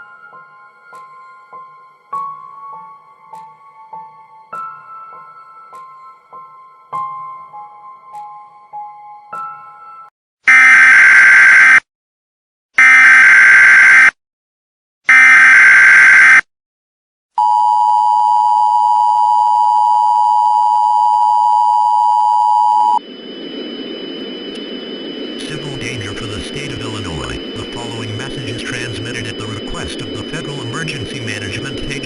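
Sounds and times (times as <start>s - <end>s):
data bursts: 22.7s - 32.0s.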